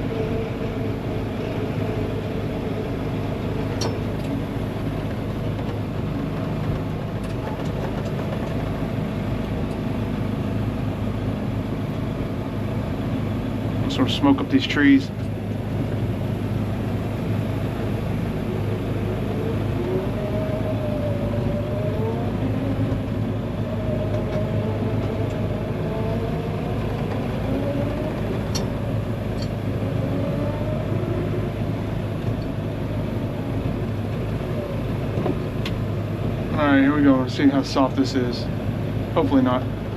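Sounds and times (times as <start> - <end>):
small engine droning: 0.0 - 39.9.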